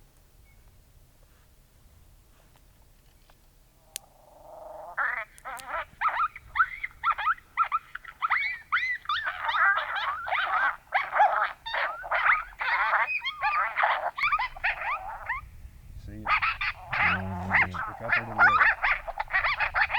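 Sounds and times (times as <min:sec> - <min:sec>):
coyote yips and howls: 0:04.2 - 0:19.9.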